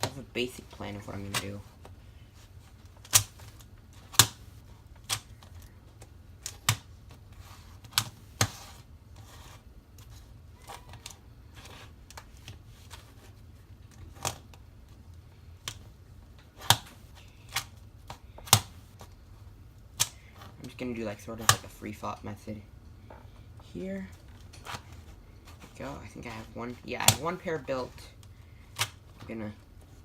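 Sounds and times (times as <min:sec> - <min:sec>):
faint handling noise: 0:22.7 - 0:30.0.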